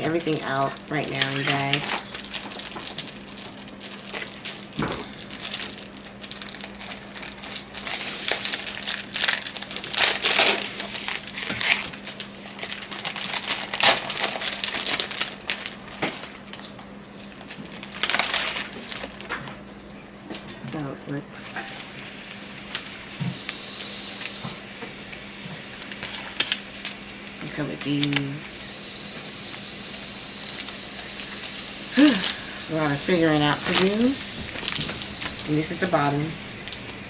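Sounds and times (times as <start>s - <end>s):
packaging crinkling: 0.0s - 19.6s, 21.7s - 37.0s
faint steady hum: 0.0s - 37.0s.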